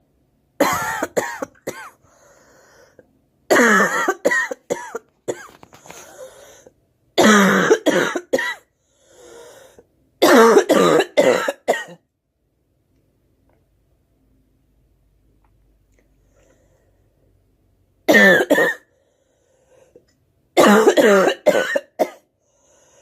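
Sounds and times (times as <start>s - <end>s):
girl coughing: 0.6s - 2.0s, 3.5s - 5.6s, 7.2s - 8.7s, 10.2s - 12.0s, 18.1s - 18.9s, 20.6s - 22.3s
faint breath: 2.0s - 3.1s, 5.7s - 6.8s, 8.7s - 9.9s, 16.0s - 17.3s, 18.9s - 20.2s, 22.3s - 23.0s.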